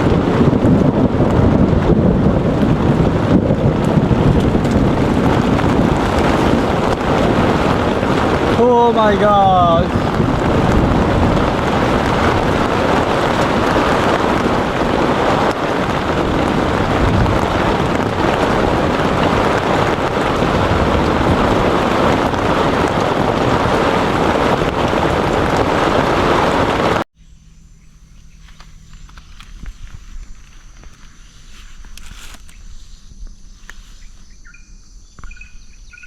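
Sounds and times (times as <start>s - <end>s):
heavy rain: 0.0s - 27.1s
wind: 0.0s - 36.0s.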